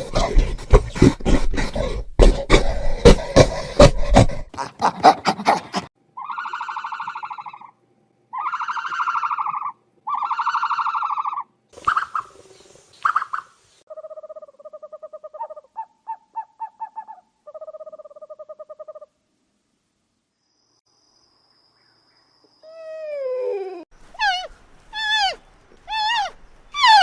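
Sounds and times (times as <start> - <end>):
breathy noisy animal call: 6.2 - 7.7, 8.3 - 11.4, 22.6 - 27.0
falling animal call: 6.2 - 7.7, 8.3 - 12.3, 22.6 - 27.0
quick chirp-like calls: 24.2 - 27.0.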